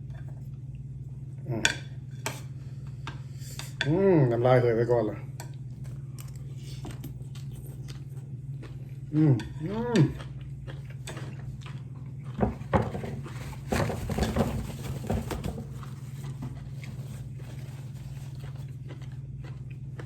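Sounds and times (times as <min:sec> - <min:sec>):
steady low hum: 0:00.0 - 0:20.0
chewing and mouth noises: 0:05.5 - 0:12.7, 0:15.8 - 0:20.0.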